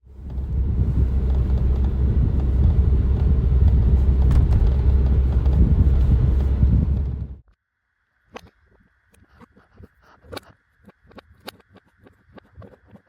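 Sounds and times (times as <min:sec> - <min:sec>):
car cabin road rumble: 0:00.0 - 0:07.4.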